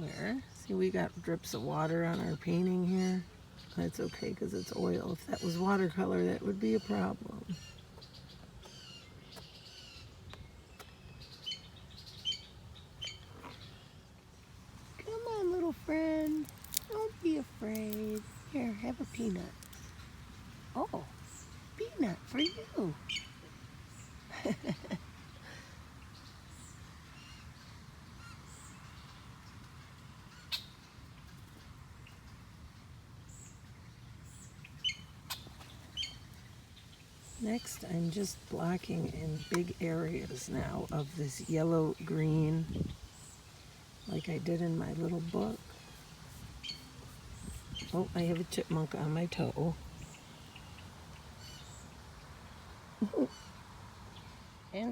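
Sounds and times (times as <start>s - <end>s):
faint steady hiss: 0.0s - 54.9s
low outdoor background: 0.0s - 54.9s
wild birds chirping: 0.0s - 54.9s.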